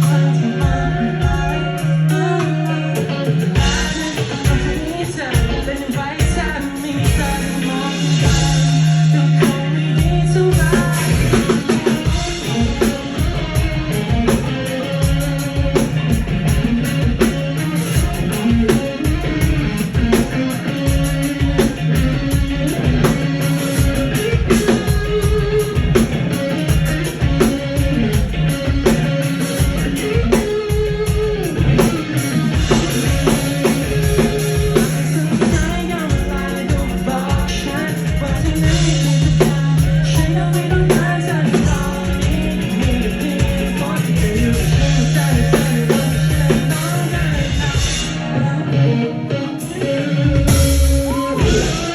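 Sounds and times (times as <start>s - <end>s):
drum kit beat: 0.0s - 48.3s, 49.6s - 51.9s
guitar: 0.0s - 51.9s
person singing: 0.0s - 51.9s.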